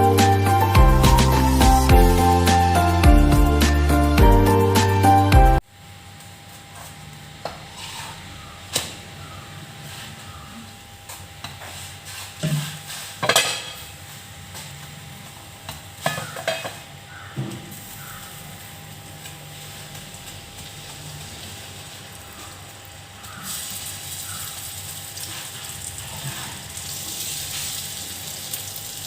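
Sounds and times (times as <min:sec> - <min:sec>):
fish sizzling in oil: 0:17.7 - 0:29.0.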